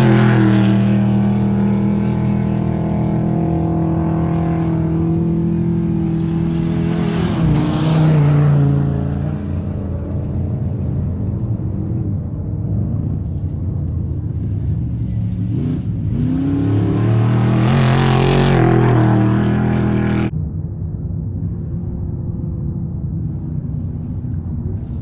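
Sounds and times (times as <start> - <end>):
engine revving past: 0.0 - 9.9, 15.2 - 20.3
race vehicle engines running: 0.0 - 25.0.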